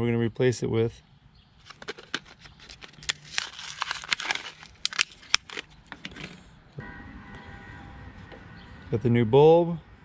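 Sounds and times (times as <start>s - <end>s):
plastic packaging crinkling: 1.6s - 6.4s.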